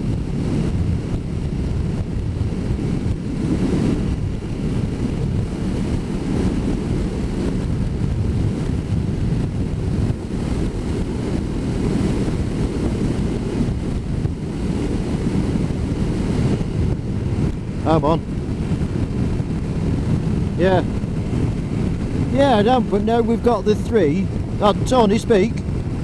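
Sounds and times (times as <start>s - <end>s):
road noise: 0.0s - 26.0s
wind rush: 0.0s - 26.0s.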